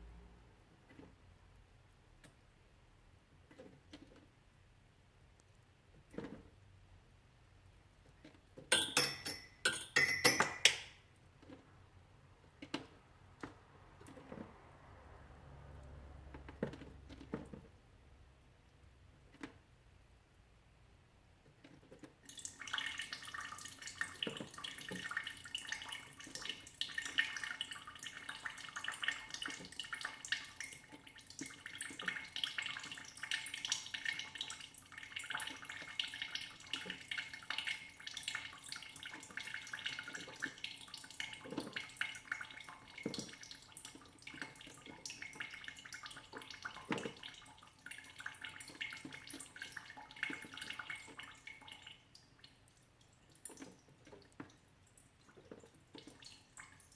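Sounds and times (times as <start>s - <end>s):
meltwater dripping: 22.2s - 56.9s.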